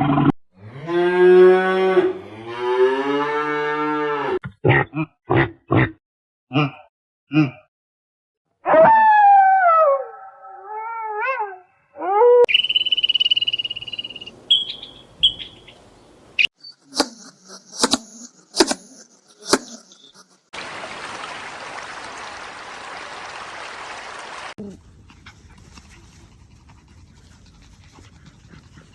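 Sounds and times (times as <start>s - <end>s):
falling wavering animal call: 8.7s - 15.9s
high steady whistling tone: 12.5s - 15.6s
sharp short animal calls: 12.5s - 16.5s.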